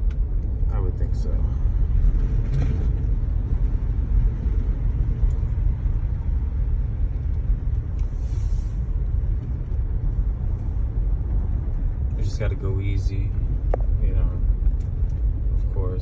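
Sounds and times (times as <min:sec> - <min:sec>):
brief hiss: 0:08.1 - 0:08.9.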